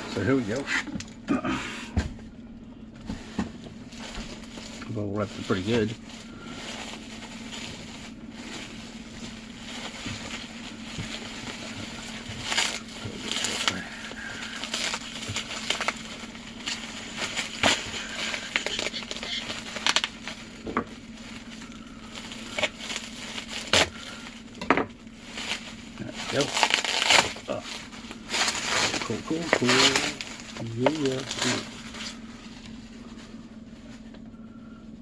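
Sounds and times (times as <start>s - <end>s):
bubble wrap crinkling: 2.9s - 34.3s
bubble wrap snapping: 5.9s - 24.4s, 25.2s - 32.8s.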